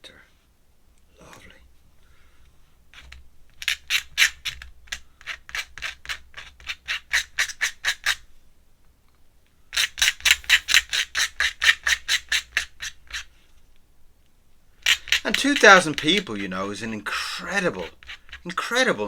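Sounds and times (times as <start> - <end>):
pen scratching on paper: 3.0 - 8.2, 9.8 - 13.3, 14.8 - 18.7.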